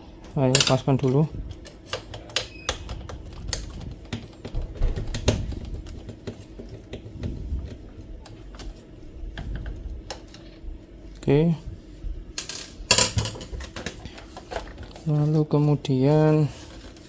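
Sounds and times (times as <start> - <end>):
plastic parts being handled: 13.1 - 15.8.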